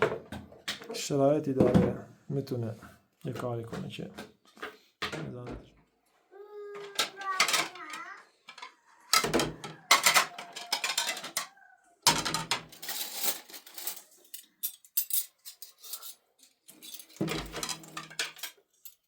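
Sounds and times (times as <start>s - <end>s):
dishes and utensils clattering: 6.8s - 19.0s.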